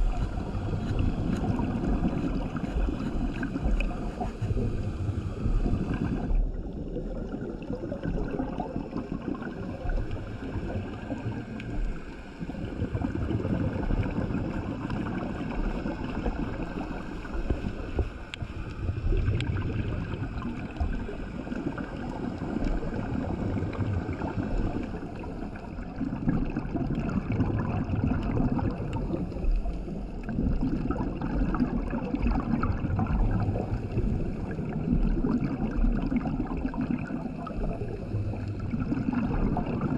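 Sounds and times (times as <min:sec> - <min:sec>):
scuba regulator breathing: 0:00.0 - 0:06.4, 0:33.2 - 0:35.0, 0:37.2 - 0:38.9
exhaled bubbles: 0:00.0 - 0:39.9
underwater water noise: 0:00.0 - 0:39.9.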